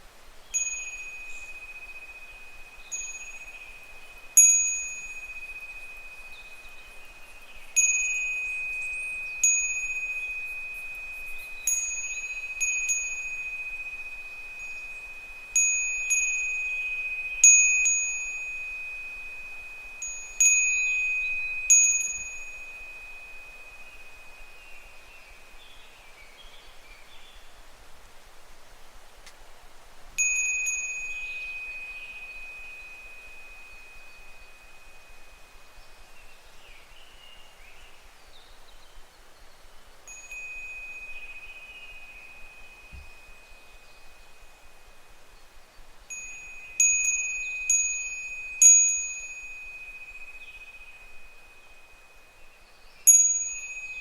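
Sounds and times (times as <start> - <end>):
wind bell tinkling: 0.5 - 26.0, 30.2 - 37.8, 40.0 - 54.0.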